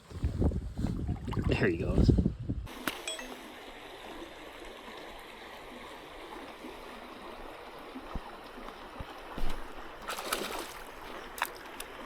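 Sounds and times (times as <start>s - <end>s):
creek water running: 2.7s - 12.0s.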